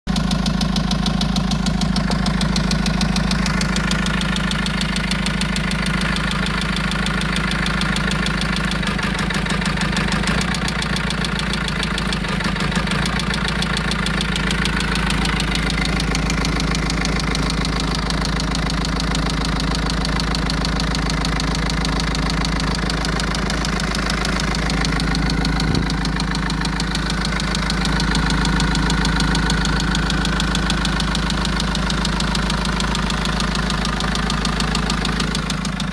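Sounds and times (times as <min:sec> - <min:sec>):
diesel engine idling with knock: 0:00.1 - 0:35.9.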